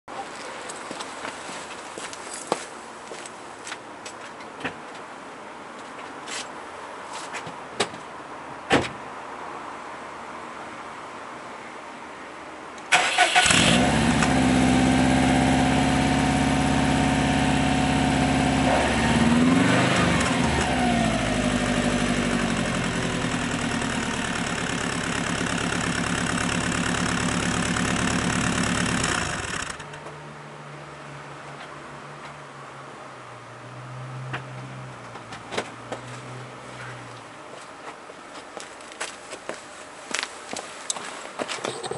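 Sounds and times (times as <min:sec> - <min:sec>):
car engine starting and idling: 0:12.9 - 0:30.0.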